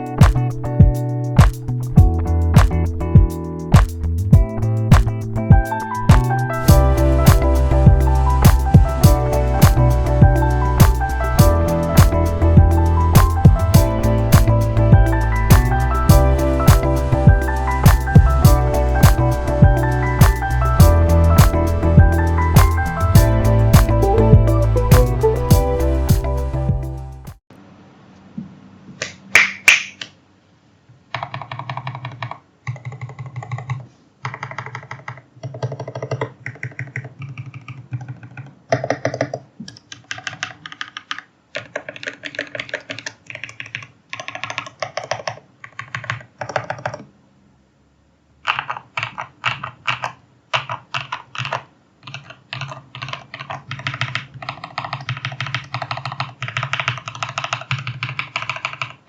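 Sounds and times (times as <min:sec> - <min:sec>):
mechanical keyboard typing: 0:04.9 - 0:24.1, 0:31.1 - 0:47.1, 0:48.4 - 0:59.0.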